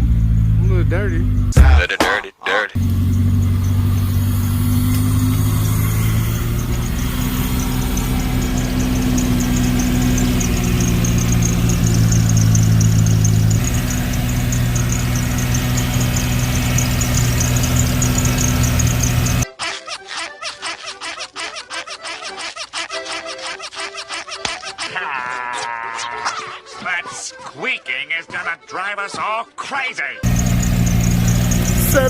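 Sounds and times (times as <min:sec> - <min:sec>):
car engine idling with ticking: 0:00.0 - 0:01.6, 0:02.8 - 0:19.4, 0:30.2 - 0:32.0.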